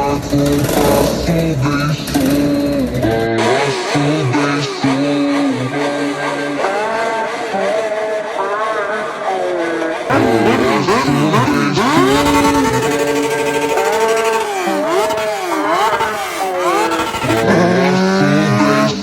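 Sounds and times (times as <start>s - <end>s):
motorcycle engines revving: 0.0s - 19.0s.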